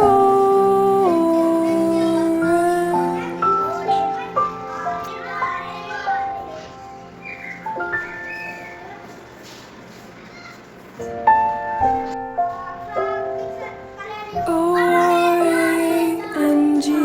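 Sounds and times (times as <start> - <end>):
voices singing children's song: 0.0 - 6.4, 14.4 - 17.0
held keyboard notes: 0.0 - 9.4, 10.9 - 17.0.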